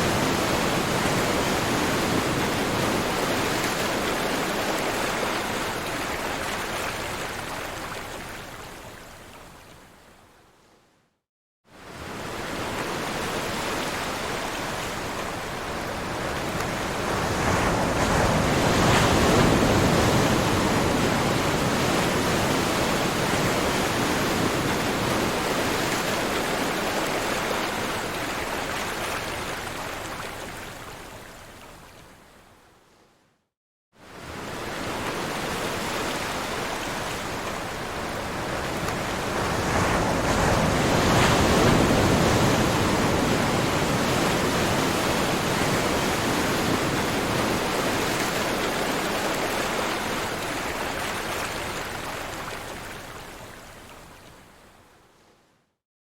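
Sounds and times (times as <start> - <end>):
ocean waves breaking: 11.8 - 30.6, 34.1 - 53.6.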